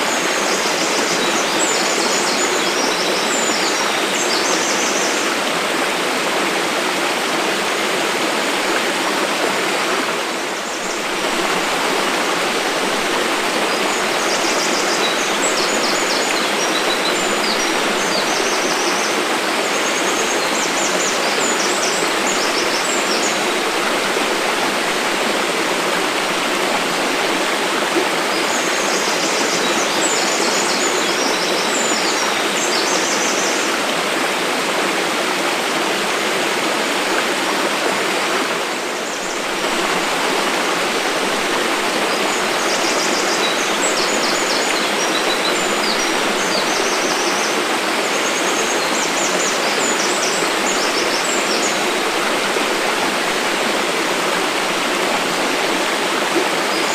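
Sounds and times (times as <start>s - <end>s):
waterfall rushing: 0.0s - 56.9s.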